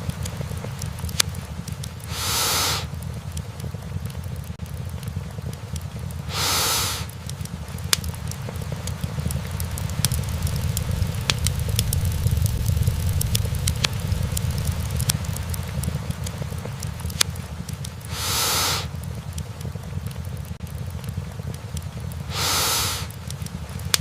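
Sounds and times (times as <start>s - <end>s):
logs crackling and popping: 0.0s - 24.0s
steady low rumble: 0.0s - 24.0s
brief rush of noise: 2.1s - 2.9s.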